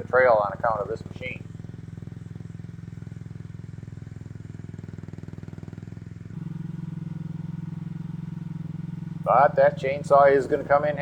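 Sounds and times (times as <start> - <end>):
mini excavator engine running: 0.0 - 11.0.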